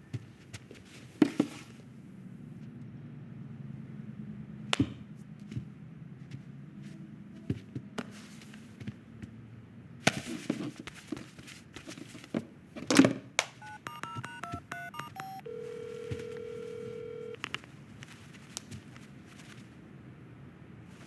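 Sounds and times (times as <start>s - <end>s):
steady telephone tone: 13.6s - 17.4s
telephone keypad beeps: 13.6s - 17.4s.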